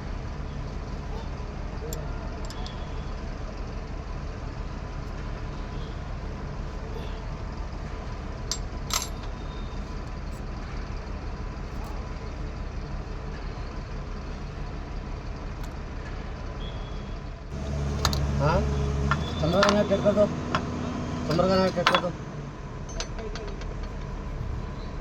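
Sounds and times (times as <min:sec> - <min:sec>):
low engine drone: 0:17.5 - 0:25.0.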